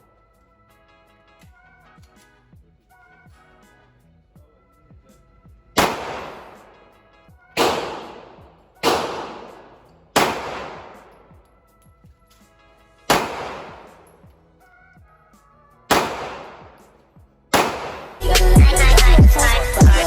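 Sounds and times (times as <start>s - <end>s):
quiet background music: 0.0s - 18.3s
echoing gunshots: 5.8s - 6.9s, 7.6s - 11.4s, 13.1s - 14.2s, 15.9s - 18.7s.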